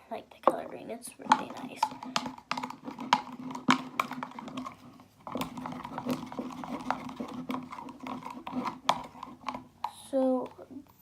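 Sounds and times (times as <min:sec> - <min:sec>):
clicks and taps against bowl: 0:00.4 - 0:10.6
utensil stirring in a bowl: 0:00.4 - 0:10.7.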